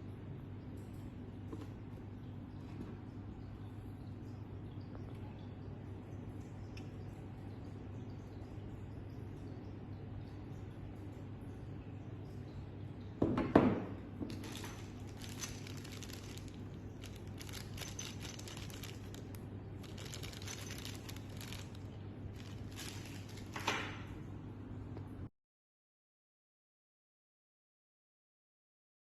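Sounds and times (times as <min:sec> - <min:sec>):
steady low hum: 0:00.0 - 0:25.3
crinkling rustling handling noise: 0:14.3 - 0:24.1.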